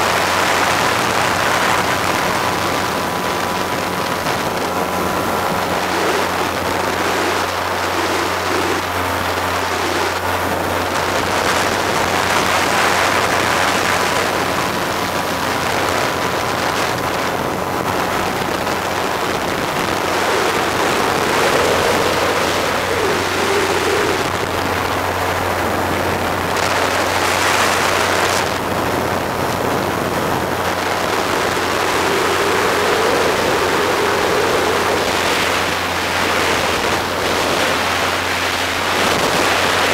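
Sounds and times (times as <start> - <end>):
small aircraft engine drone: 0.0 - 39.9
wind rushing over microphone: 0.0 - 39.9.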